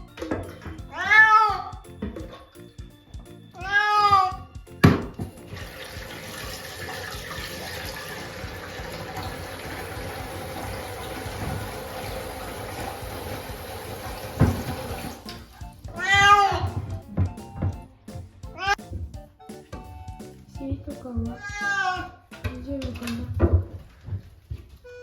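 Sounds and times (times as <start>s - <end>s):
cat meowing: 0.8s - 1.8s, 3.6s - 4.5s, 15.9s - 16.8s, 18.6s - 18.8s, 21.4s - 22.2s
shower water spraying: 5.3s - 15.6s.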